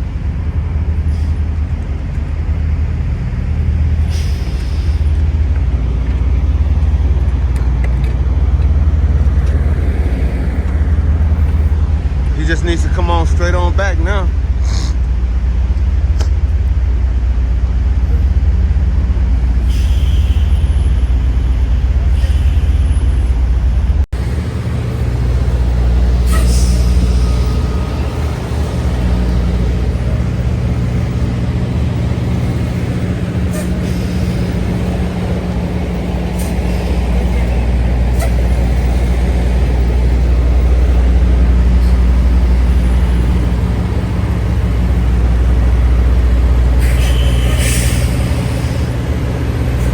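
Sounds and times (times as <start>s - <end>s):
diesel truck engine running: 0.0s - 20.1s, 22.9s - 49.9s
air brake hisses: 4.0s - 5.1s, 19.6s - 20.9s, 26.2s - 28.2s, 46.8s - 48.9s.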